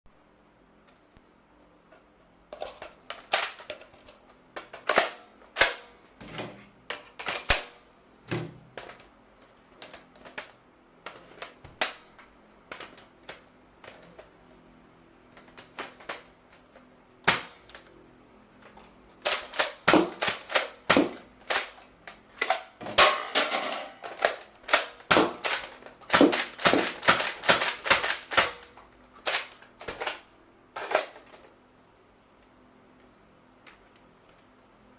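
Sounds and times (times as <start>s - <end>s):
plastic toy blaster clicks: 3.1s - 5.9s, 24.2s - 31.2s.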